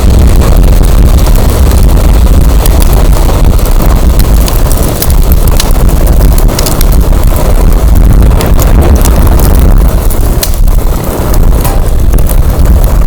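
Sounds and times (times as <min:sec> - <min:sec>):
firewood crackling and popping: 0:00.0 - 0:13.0
wind buffeting microphone: 0:00.0 - 0:13.0.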